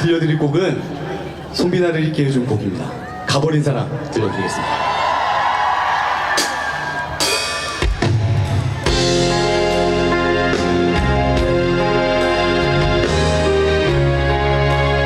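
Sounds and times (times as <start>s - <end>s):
steady drum beat: 6.3s - 14.1s
sustained keyboard chords: 8.8s - 15.0s.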